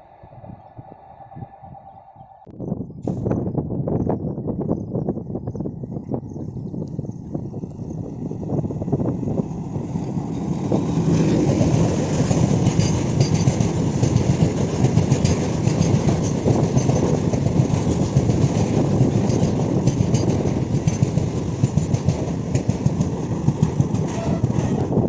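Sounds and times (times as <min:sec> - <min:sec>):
train rumbling past: 0:00.0 - 0:04.6, 0:07.2 - 0:25.0
wheels clicking over rail joints: 0:07.5 - 0:25.0.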